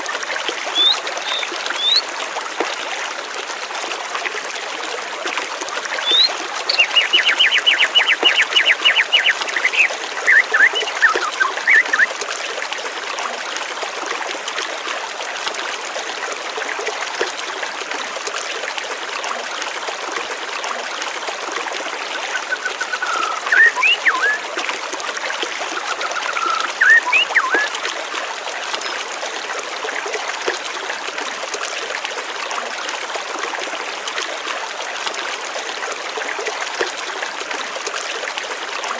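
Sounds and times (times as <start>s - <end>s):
flowing water: 0.0s - 38.9s
songbird singing: 0.7s - 2.1s, 6.0s - 12.1s, 22.3s - 24.4s, 25.8s - 27.7s.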